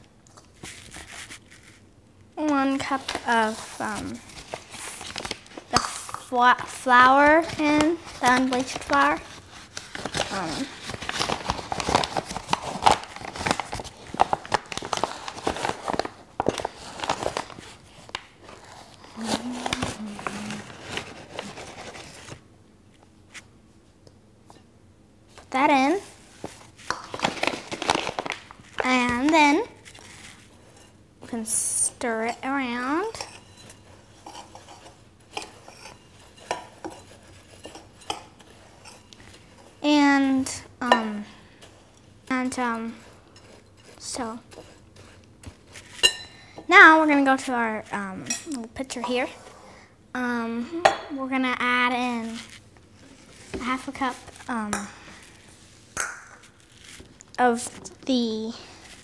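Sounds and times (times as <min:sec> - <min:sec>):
flour being scooped and measured: 0:00.4 - 0:01.8, 0:28.6 - 0:49.5
spoon stirring dry oats: 0:29.8 - 0:39.8, 0:41.6 - 0:46.2.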